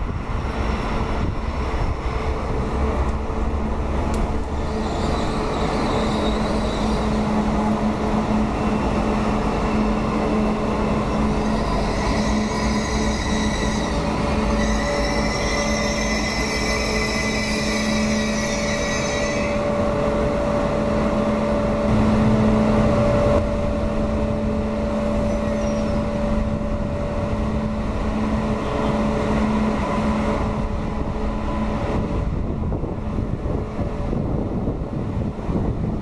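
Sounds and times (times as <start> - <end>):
train hum over low rumble: 0.0 - 36.0
train wheel squeal: 4.5 - 7.7, 8.4 - 21.7, 24.9 - 26.6.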